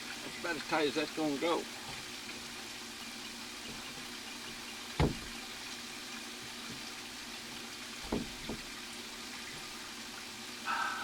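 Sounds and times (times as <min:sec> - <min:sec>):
sharp knock of plastic pipe: 0:05.0 - 0:05.4, 0:08.0 - 0:08.7.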